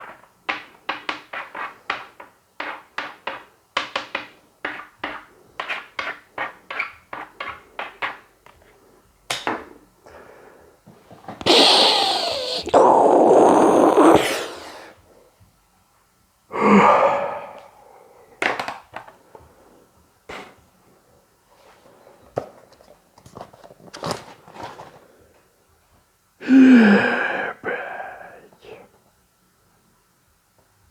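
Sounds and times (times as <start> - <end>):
breathy vocal sound: 11.5 - 15.0, 16.5 - 18.3, 26.4 - 28.9
short breath: 16.5 - 18.3, 26.4 - 28.8.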